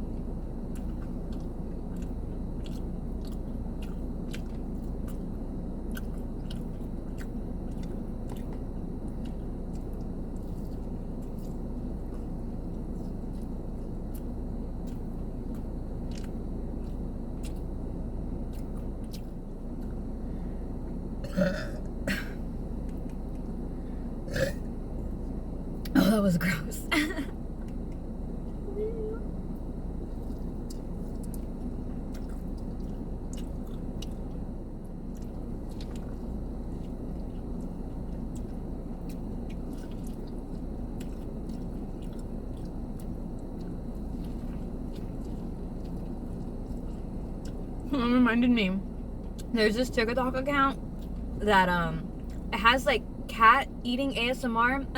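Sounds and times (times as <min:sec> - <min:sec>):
person chewing food: 0:00.0 - 0:25.9, 0:27.5 - 0:48.0, 0:49.0 - 0:49.5, 0:50.8 - 0:51.4, 0:52.1 - 0:52.5
steady low hum: 0:00.0 - 0:54.9
woman burping: 0:21.2 - 0:22.4, 0:24.3 - 0:24.7, 0:25.9 - 0:26.2, 0:26.9 - 0:27.3.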